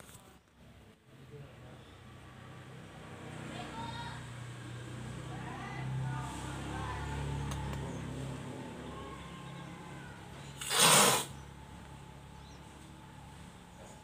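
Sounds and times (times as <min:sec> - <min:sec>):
low background noise: 0:00.0 - 0:14.0
loud hiss of noise: 0:10.5 - 0:11.4.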